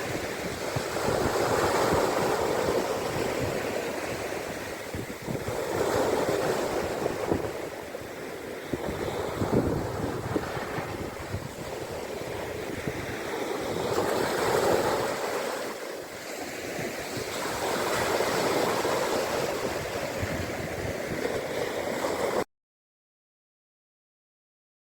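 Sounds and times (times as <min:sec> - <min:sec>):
wind rumble on microphone: 0:00.0 - 0:22.4
waves washing onto shore: 0:00.0 - 0:22.5.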